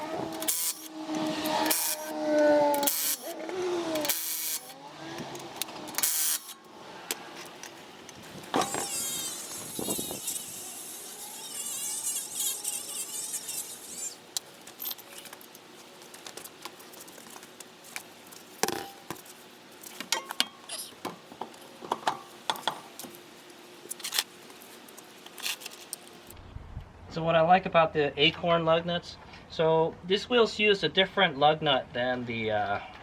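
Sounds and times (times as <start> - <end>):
wavering power tool noise: 0.0 - 15.6.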